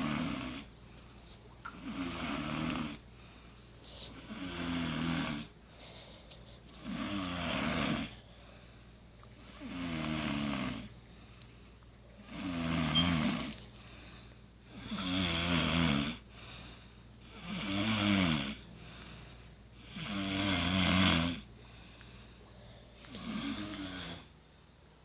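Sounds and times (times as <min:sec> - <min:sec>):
person snoring: 0:00.0 - 0:00.7, 0:01.7 - 0:03.0, 0:04.1 - 0:06.0, 0:06.8 - 0:08.4, 0:09.4 - 0:10.9, 0:12.2 - 0:13.6, 0:14.7 - 0:19.1, 0:19.8 - 0:21.5, 0:22.9 - 0:24.3.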